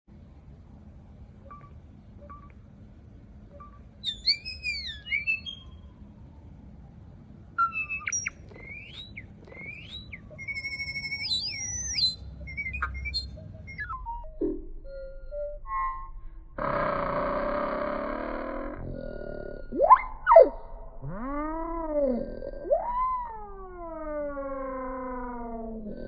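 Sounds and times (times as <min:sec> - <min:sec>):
bird whistling and chirping: 0:03.6 - 0:05.9, 0:07.6 - 0:16.0.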